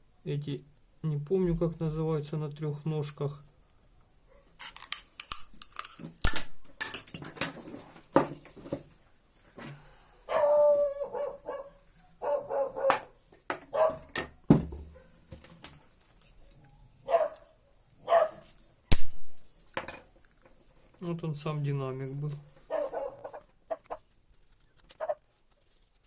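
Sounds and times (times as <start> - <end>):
dog barking and whining: 10.3 - 14.1, 16.6 - 18.5, 22.7 - 24.0.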